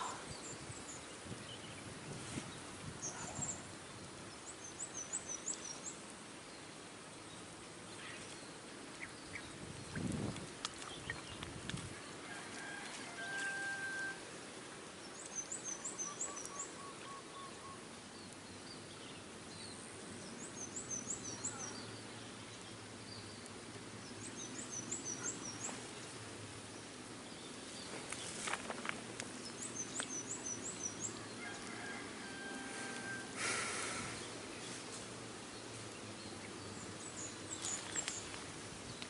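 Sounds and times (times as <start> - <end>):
outdoor background noise: 0.0 - 39.0.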